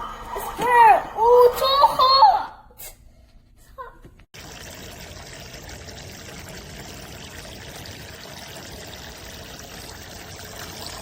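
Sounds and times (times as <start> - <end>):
water running into sink basin: 4.4 - 11.0.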